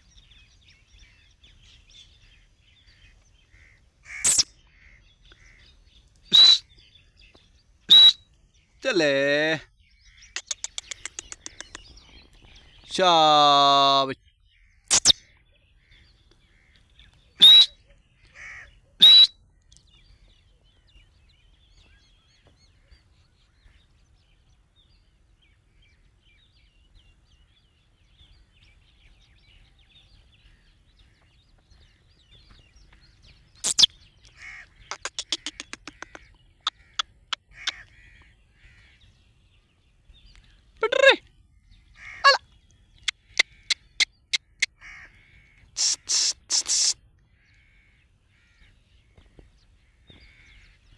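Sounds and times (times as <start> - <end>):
bird calling in harsh outbursts: 3.5 - 5.6, 6.3 - 6.7, 7.9 - 8.2, 14.8 - 15.3, 17.4 - 17.8, 18.4 - 19.4, 33.6 - 39.0, 42.0 - 42.4, 43.0 - 47.0.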